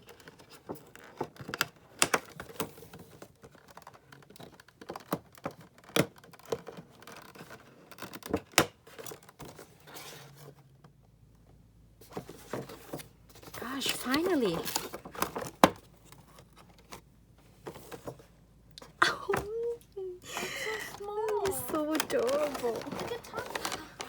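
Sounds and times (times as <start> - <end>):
packaging crinkling and snapping: 20.3 - 24.0.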